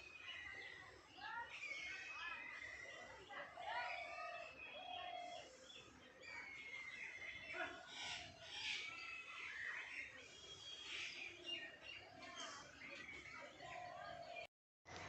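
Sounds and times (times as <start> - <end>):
birds chirping: 0.0 - 15.0.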